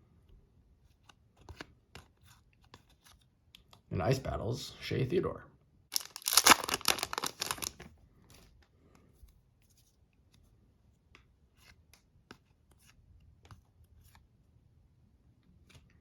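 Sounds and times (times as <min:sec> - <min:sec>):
cards rustling: 0:06.0 - 0:08.6.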